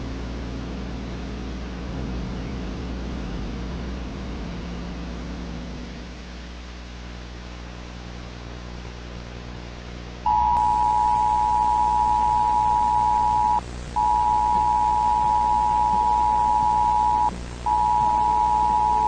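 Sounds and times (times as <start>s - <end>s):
low hiss and hum: 0.0s - 19.0s
two-tone emergency alert signal: 10.3s - 19.0s.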